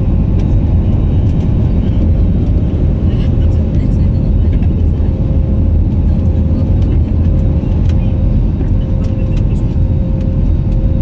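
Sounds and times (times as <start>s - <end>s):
aircraft engine and airflow rumble: 0.0s - 11.0s.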